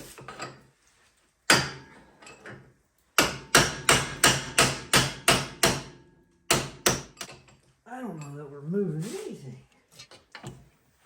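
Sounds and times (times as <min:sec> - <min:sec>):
hammer striking metal joint: 0:01.5 - 0:01.9, 0:03.2 - 0:07.4.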